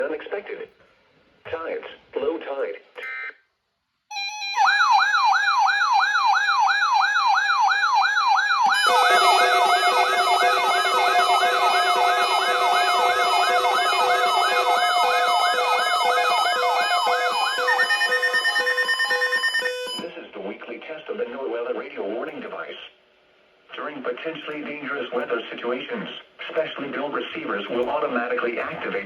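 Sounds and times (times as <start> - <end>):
electronic siren sweeping upward: 8.6 - 20.0
steady alarm tones: 8.6 - 20.0.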